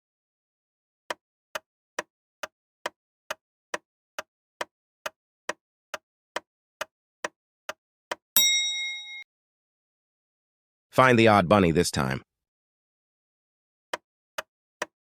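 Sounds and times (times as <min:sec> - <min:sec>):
bell ding: 0:08.4 - 0:09.2.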